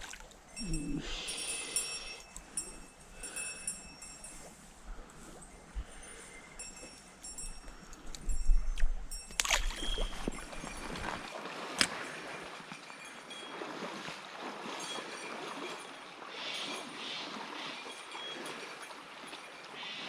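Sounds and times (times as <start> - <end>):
river water flowing: 0.0 - 8.1, 9.1 - 20.0
wind rumble on microphone: 4.0 - 11.3.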